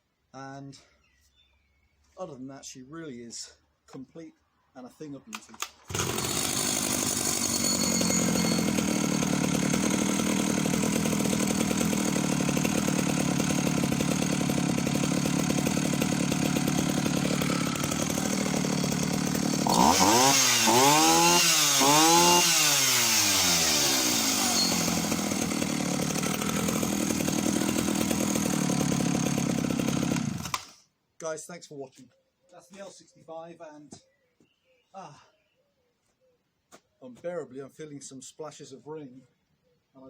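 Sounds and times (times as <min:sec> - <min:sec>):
chainsaw idling and revving: 0:05.6 - 0:30.8.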